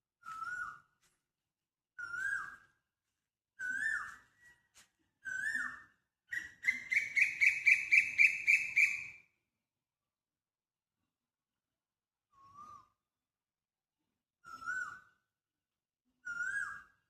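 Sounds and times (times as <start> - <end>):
bird singing whistled notes: 0.2 - 0.9, 2.0 - 2.7, 3.6 - 9.2, 12.3 - 13.0, 14.4 - 15.2, 16.2 - 17.0.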